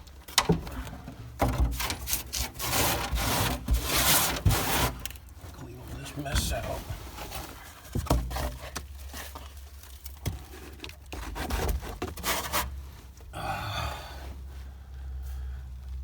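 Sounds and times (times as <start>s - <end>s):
carpet scraping and tearing: 1.7s - 13.1s.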